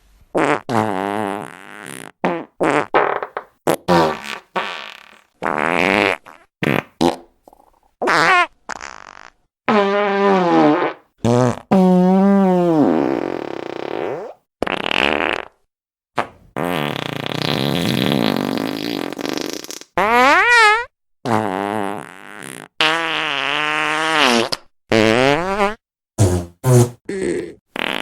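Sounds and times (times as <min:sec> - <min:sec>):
fart sound effects: 0:00.4 - 0:15.6, 0:16.2 - 0:28.0.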